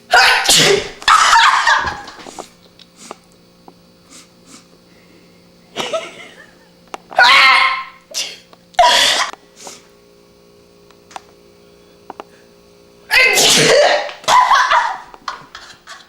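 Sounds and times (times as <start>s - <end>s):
loud sneezes: 0.1s - 2.0s, 7.2s - 9.3s, 13.1s - 15.0s.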